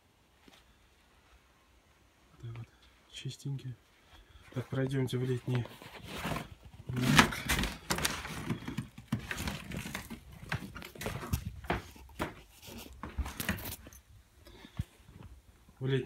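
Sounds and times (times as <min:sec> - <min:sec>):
camera handling rustle: 0:05.5 - 0:14.0
footsteps: 0:07.6 - 0:14.0.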